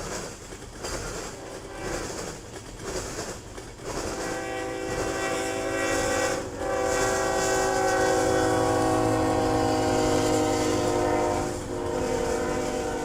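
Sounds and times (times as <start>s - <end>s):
passing train rumble: 0.0s - 13.0s
locomotive air horn chord: 4.0s - 13.0s.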